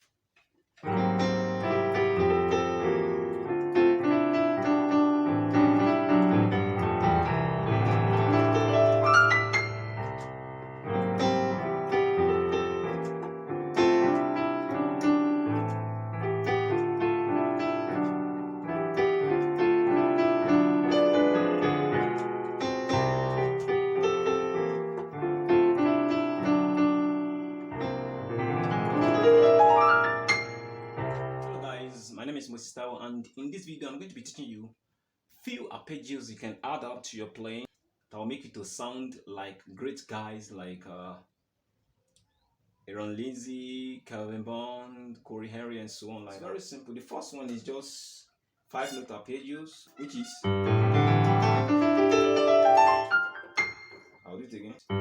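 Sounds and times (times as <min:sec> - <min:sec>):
piano chords and arpeggios: 0:00.8 - 0:32.0, 0:50.4 - 0:54.2
quick rising piano run: 0:00.8 - 0:32.0, 0:50.4 - 0:54.2.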